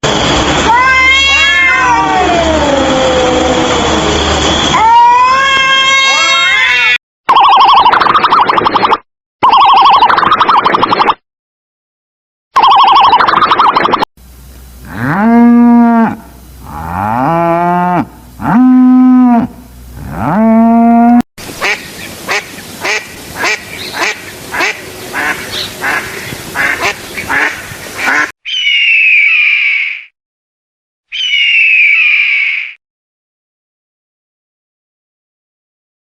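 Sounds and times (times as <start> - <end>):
high downward-sweeping animal calls: 0.6 - 11.2, 28.1 - 30.1, 31.1 - 32.8
cattle mooing: 14.8 - 21.2
ducks quacking: 21.6 - 28.3.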